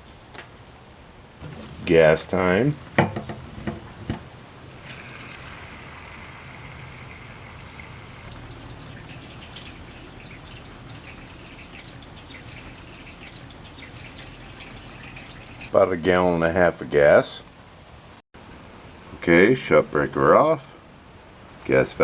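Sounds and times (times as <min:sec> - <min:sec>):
gasoline pouring into fuel tank: 0:04.8 - 0:15.8.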